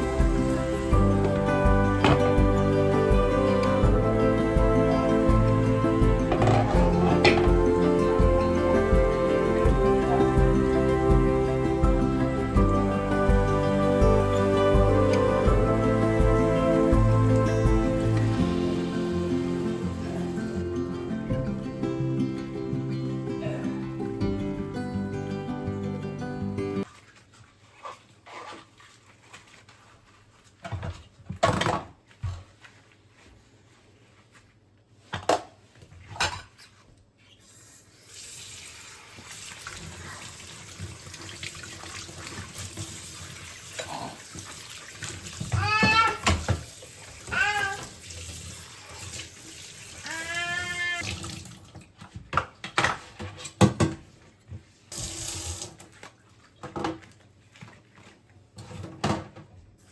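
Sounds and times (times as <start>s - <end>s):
tap water running into sink: 0.1s - 2.6s, 6.2s - 7.6s, 38.0s - 51.9s, 54.9s - 55.9s
objects being handled: 1.1s - 2.5s, 6.2s - 7.7s.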